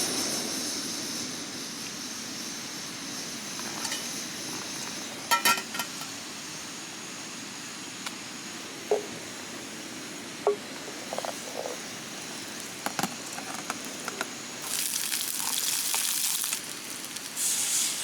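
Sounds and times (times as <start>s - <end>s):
dishes clinking: 3.7s - 4.1s, 5.3s - 6.1s.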